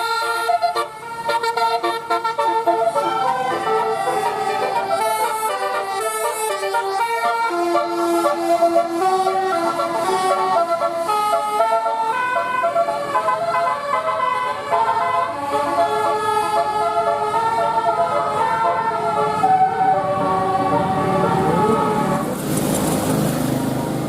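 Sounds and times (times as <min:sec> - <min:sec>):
multi-tone air horn melody: 0:00.0 - 0:22.5.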